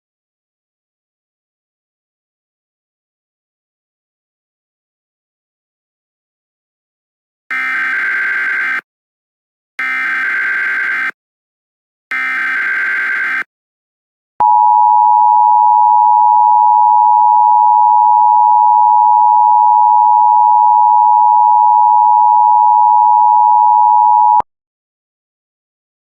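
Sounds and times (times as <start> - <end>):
two-tone beep: 14.4 - 24.4.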